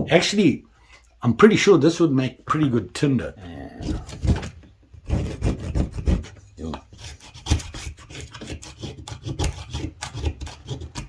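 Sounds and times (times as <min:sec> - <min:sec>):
wood scraped over metal grater: 0:05.0 - 0:11.0.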